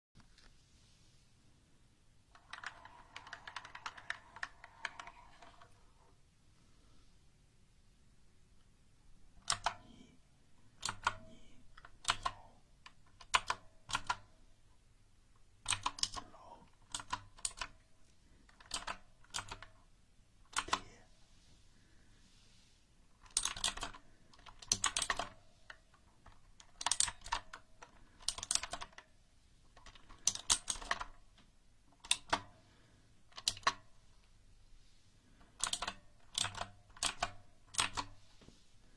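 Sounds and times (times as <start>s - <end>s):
mechanical keyboard clicks: 2.3s - 5.7s, 9.4s - 9.8s, 10.8s - 14.3s, 15.6s - 17.8s, 18.5s - 19.8s, 20.5s - 20.9s, 23.2s - 29.1s, 29.7s - 32.5s, 33.3s - 33.8s, 35.5s - 38.2s.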